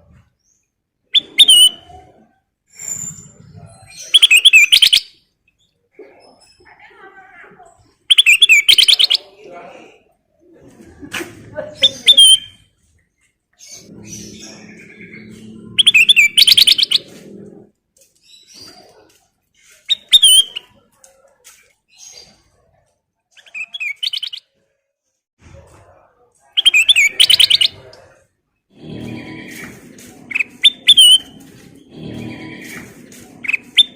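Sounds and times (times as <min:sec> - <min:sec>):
bulbul singing: 0:08.1 - 0:09.3, 0:13.7 - 0:17.2.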